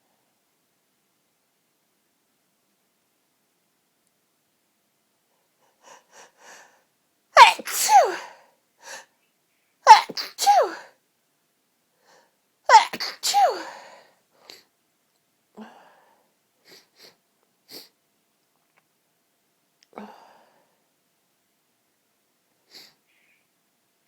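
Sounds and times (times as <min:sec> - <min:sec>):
woman sneezing: 0:07.4 - 0:08.4, 0:09.9 - 0:10.9, 0:12.7 - 0:13.9.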